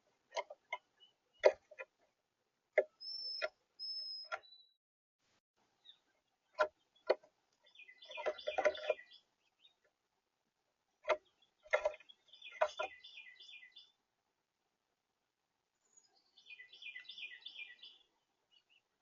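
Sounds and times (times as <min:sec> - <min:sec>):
small birds chirping: 0:00.3 - 0:02.1, 0:02.8 - 0:04.8, 0:05.8 - 0:10.0, 0:11.0 - 0:14.0, 0:15.8 - 0:19.0.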